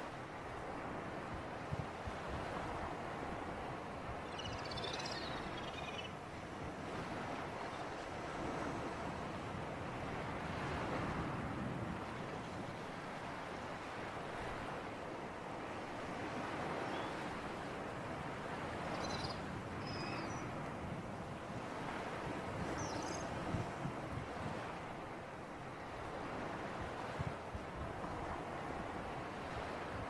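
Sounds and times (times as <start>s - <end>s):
sea surf washing ashore: 0.0s - 30.0s
wind: 0.0s - 30.0s
faint high chirps: 4.3s - 6.1s.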